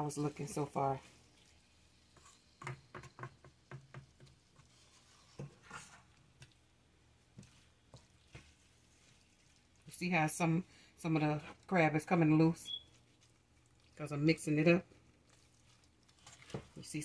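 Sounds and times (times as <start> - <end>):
spoon scraping a pot: 2.1 - 2.9, 4.6 - 6.2.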